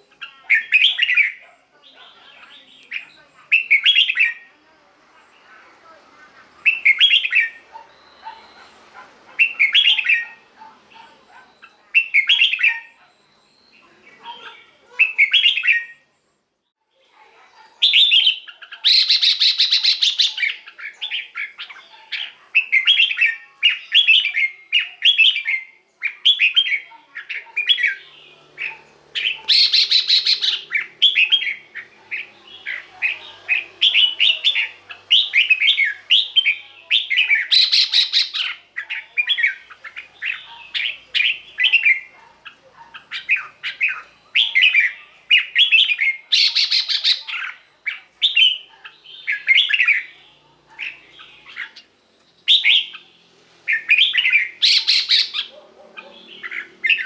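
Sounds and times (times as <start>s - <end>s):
bird chirping and warbling: 0.0s - 4.5s, 5.2s - 16.3s, 17.0s - 57.0s
harsh bird bursts: 17.8s - 21.6s, 27.6s - 38.7s, 52.5s - 55.5s.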